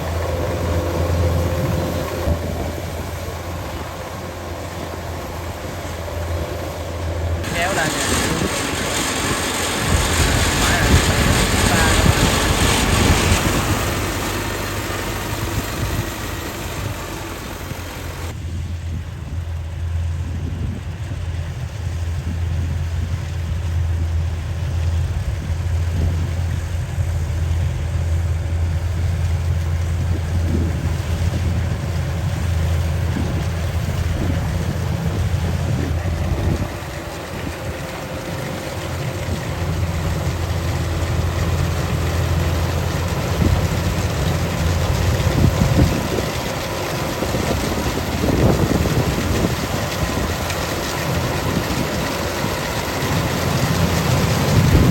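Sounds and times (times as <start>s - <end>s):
wind noise on microphone: 0.0s - 4.0s, 7.4s - 24.0s, 25.0s - 27.0s, 29.9s - 38.2s, 43.2s - 54.9s
diesel engine droning: 0.0s - 54.9s.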